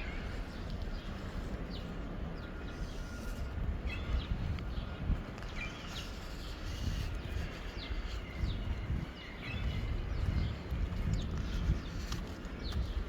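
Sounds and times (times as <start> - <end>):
wind rumble on microphone: 0.0 - 13.0
birds chirping: 3.8 - 13.0.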